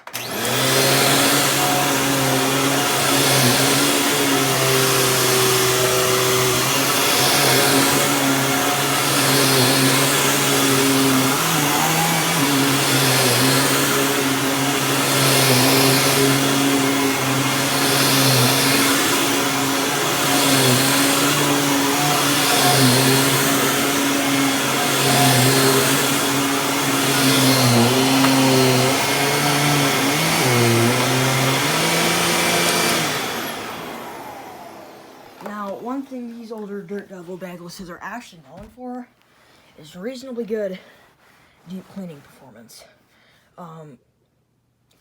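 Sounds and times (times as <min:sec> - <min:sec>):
upright vacuum cleaner running on carpet: 0:00.0 - 0:35.8.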